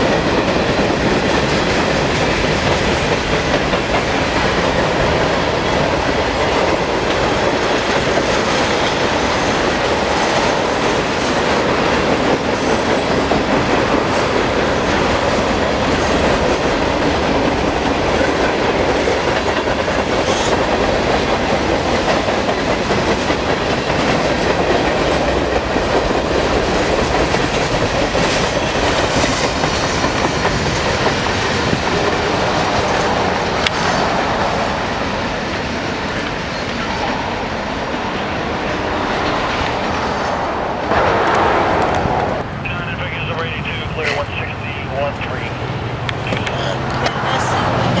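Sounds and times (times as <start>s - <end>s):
train wheels clattering over rails: 0.0s - 42.4s.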